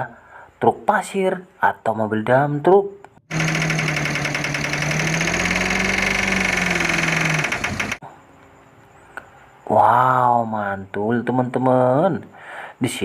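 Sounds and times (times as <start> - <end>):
truck engine idling: 3.3 - 8.0.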